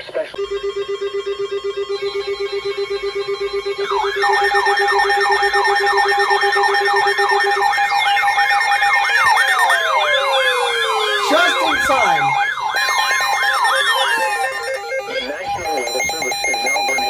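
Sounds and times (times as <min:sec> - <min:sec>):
siren-like wailing tone: 0:09.8 - 0:16.3.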